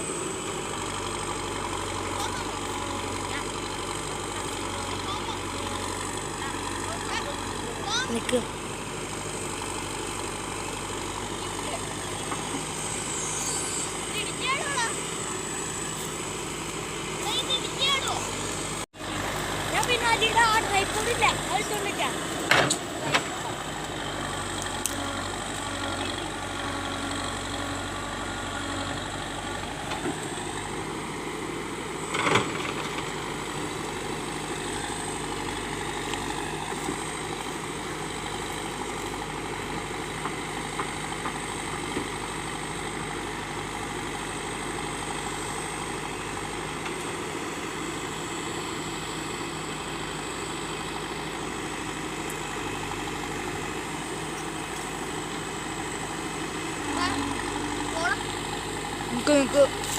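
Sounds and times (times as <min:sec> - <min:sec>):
diesel engine idling: 0:00.0 - 0:59.9.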